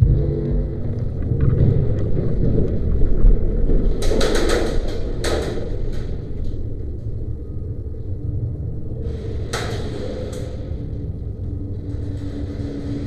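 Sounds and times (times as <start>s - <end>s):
low rumbling movement noise: 0.0s - 13.0s.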